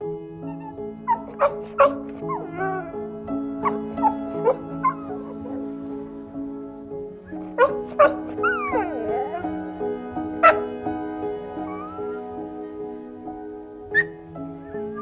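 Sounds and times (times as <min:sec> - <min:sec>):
background music: 0:00.0 - 0:15.0
dog whining: 0:00.1 - 0:06.0, 0:07.2 - 0:10.7, 0:11.6 - 0:15.0
dog yipping and barking: 0:00.2 - 0:05.8, 0:07.2 - 0:09.7, 0:10.4 - 0:10.7, 0:11.6 - 0:15.0.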